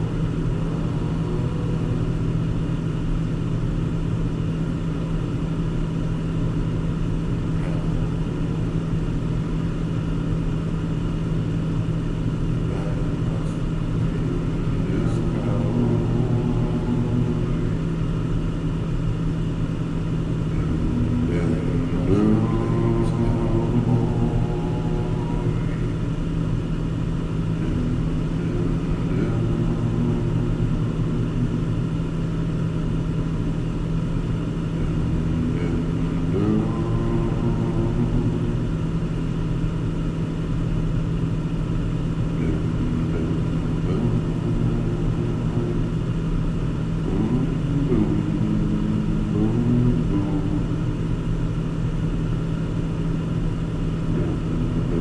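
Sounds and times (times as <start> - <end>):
car engine and road drone: 0.0 - 55.0.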